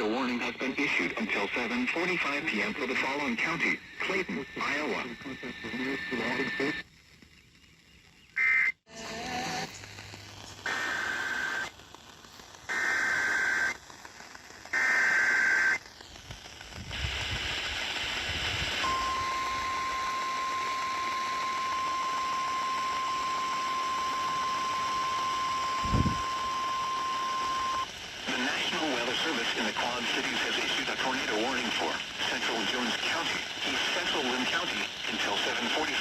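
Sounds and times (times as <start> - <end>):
radio hiss: 0.0 - 36.0
steady warning alarm tone: 18.8 - 27.9.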